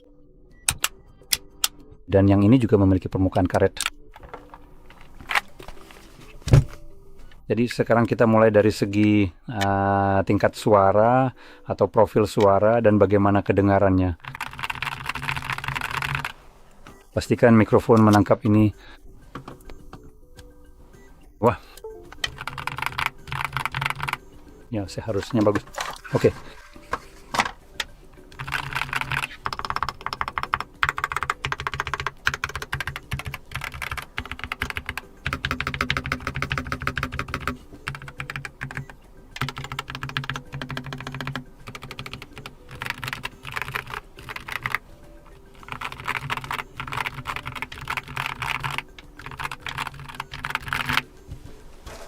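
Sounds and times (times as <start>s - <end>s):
keyboard typing clacks: 14.2s - 16.4s, 22.1s - 24.3s, 28.3s - 44.8s, 45.5s - 51.1s.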